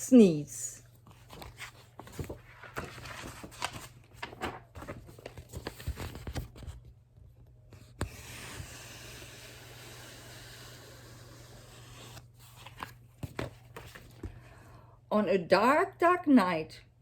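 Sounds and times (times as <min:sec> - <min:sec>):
paper pages rustling and turning: 0:01.0 - 0:07.0, 0:07.8 - 0:14.4.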